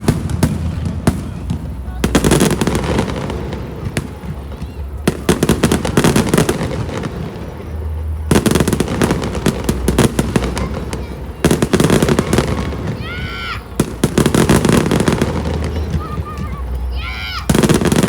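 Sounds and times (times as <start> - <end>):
fireworks bursting and crackling: 0.0 - 18.0.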